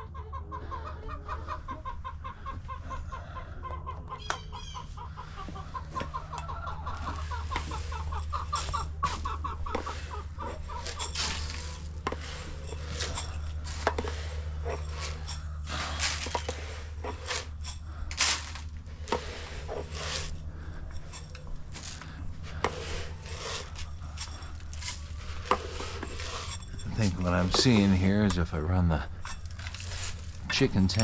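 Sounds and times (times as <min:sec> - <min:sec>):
chickens clucking: 0:00.0 - 0:31.0
steady low rumble: 0:04.9 - 0:31.0.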